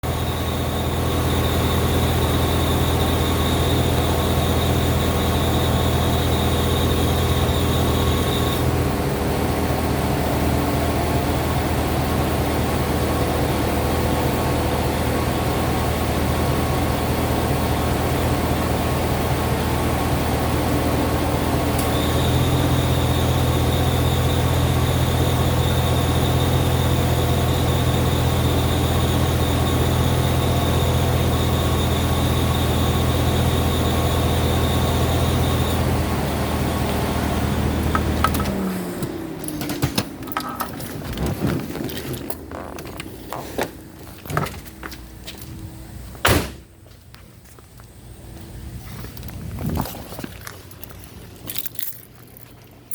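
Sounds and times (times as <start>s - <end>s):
car engine running: 0.0s - 46.2s.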